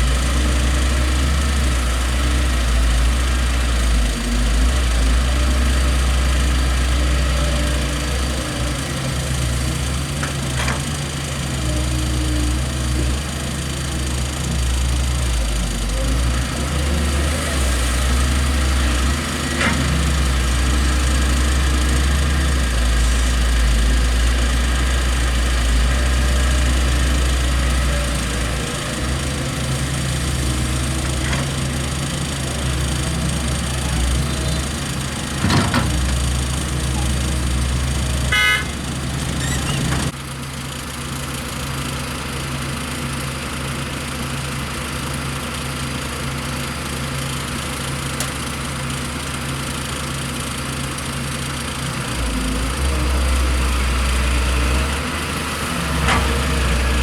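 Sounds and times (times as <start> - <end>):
heavy diesel engines running: 0.0 - 57.0
brief horn toot: 38.3 - 38.8.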